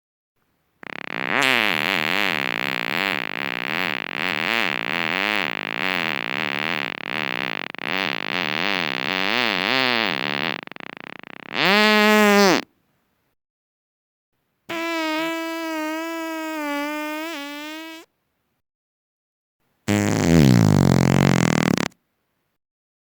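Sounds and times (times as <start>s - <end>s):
fart: 0.8s - 12.7s, 14.7s - 18.1s, 19.9s - 22.0s.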